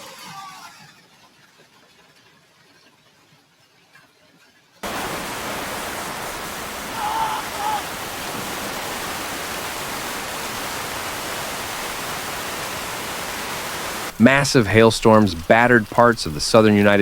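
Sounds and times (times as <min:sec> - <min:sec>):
heavy rain pounding down: 0:04.8 - 0:17.0.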